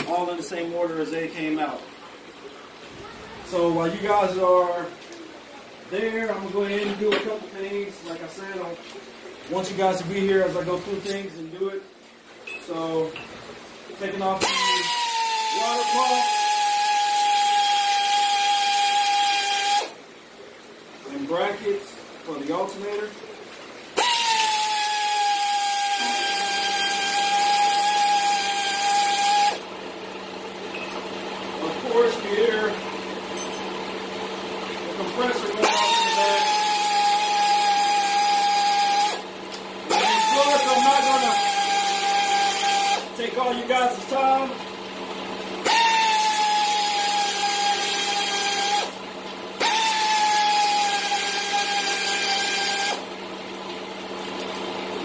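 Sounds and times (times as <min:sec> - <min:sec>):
air compressor hum: 0:12.6 - 0:20.0, 0:23.9 - 0:55.0
air tool whine: 0:14.4 - 0:20.0, 0:24.0 - 0:29.7, 0:35.6 - 0:39.3, 0:39.9 - 0:43.1, 0:45.6 - 0:49.0, 0:49.6 - 0:53.1
air hiss: 0:24.0 - 0:29.6.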